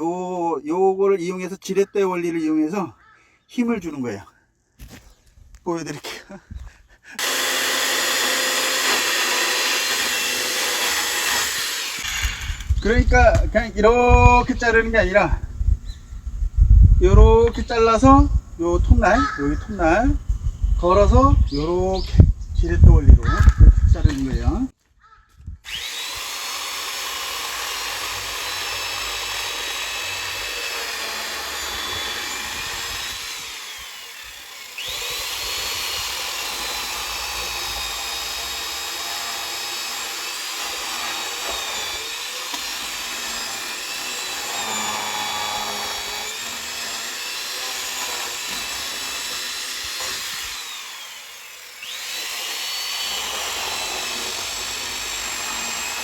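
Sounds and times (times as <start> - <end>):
electric chainsaw cutting log: 7.2 - 14.8, 25.6 - 56.0.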